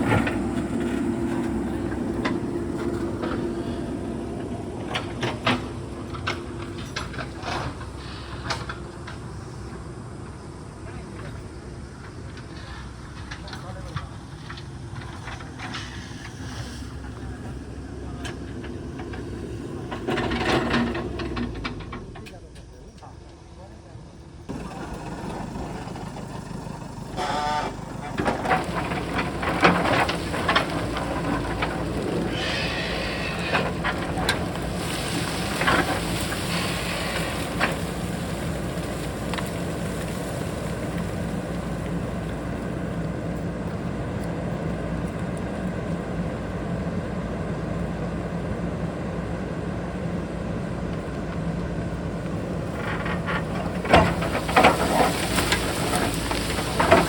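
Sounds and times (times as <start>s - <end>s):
diesel engine running: 0.0s - 57.0s
knocks and clatter: 27.8s - 32.6s, 52.2s - 57.0s.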